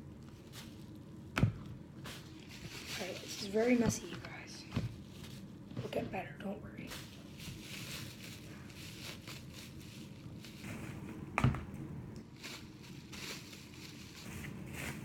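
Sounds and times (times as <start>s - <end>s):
plastic rustling and crackling: 0.0s - 15.0s.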